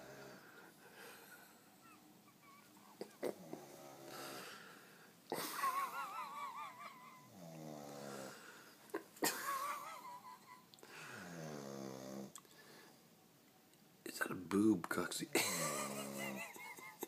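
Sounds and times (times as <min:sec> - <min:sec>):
man snoring heavily: 0:00.0 - 0:00.5, 0:07.3 - 0:08.5, 0:11.0 - 0:12.3.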